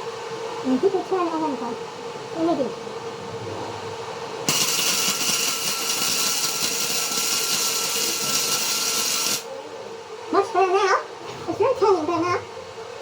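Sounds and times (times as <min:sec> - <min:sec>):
steady electrical hum: 0:00.0 - 0:13.0
welder arc crackling and hissing: 0:04.4 - 0:09.5.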